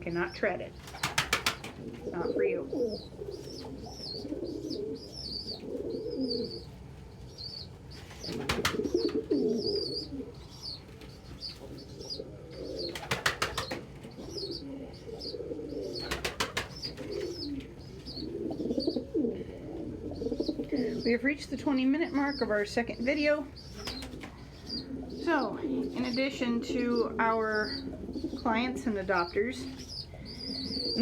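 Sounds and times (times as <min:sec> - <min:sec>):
wing flapping: 0:00.8 - 0:02.0, 0:08.0 - 0:09.4, 0:12.8 - 0:14.1, 0:15.9 - 0:17.6, 0:23.8 - 0:24.4
pigeons cooing: 0:00.8 - 0:31.0.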